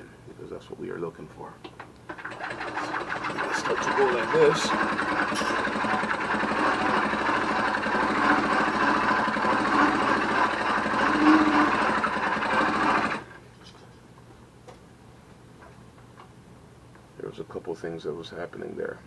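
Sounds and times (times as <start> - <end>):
small two-stroke engine running: 2.1 - 13.4.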